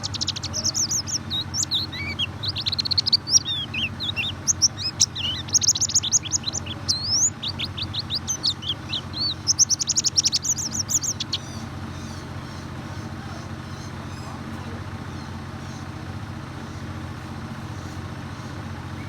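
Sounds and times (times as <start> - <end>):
bird twittering song: 0.0 - 14.4
low steady hum: 0.0 - 15.5.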